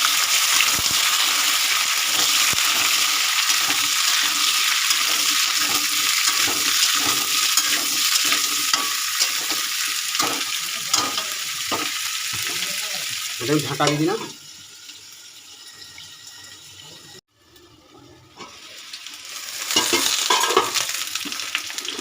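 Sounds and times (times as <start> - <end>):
food sizzling in hot oil: 0.0 - 22.0
spatula scraping a pan: 2.1 - 12.7.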